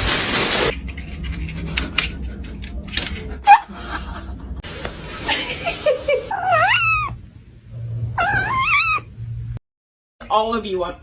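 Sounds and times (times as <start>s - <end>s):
cat meowing: 6.3s - 7.2s, 8.2s - 9.1s.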